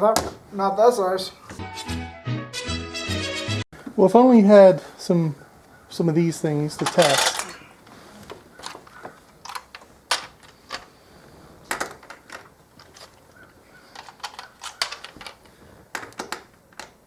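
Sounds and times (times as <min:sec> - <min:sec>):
small hand tools clicking and clinking: 0:06.7 - 0:07.7, 0:08.6 - 0:10.9, 0:11.7 - 0:17.0.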